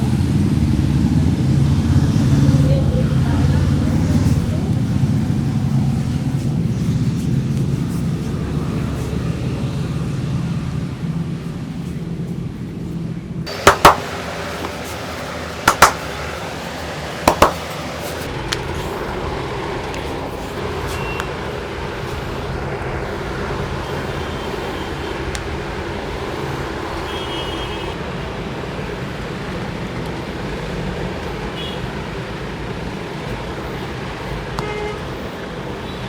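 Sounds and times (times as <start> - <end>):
street traffic hum: 0.0 - 36.0
sharp loud massage smacks: 13.5 - 14.2, 15.6 - 16.2, 17.2 - 17.7.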